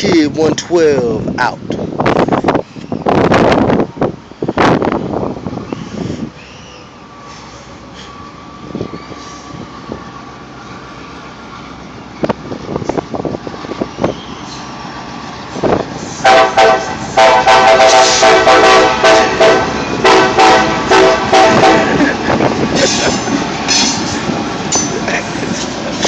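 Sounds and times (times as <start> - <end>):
locomotive air horn blasts: 16.1 - 22.2.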